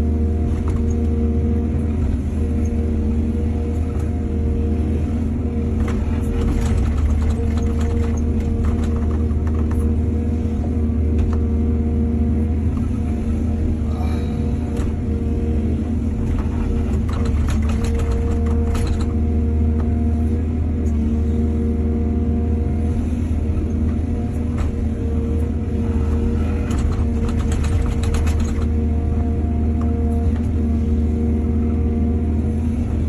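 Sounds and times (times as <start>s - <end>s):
excavator diesel engine running: 0.0s - 33.0s
rapid rattling clatter: 16.8s - 19.2s, 26.6s - 28.8s.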